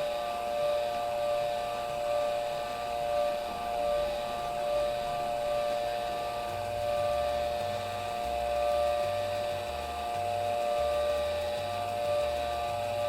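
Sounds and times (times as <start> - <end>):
small electric motors whining: 0.0 - 13.0.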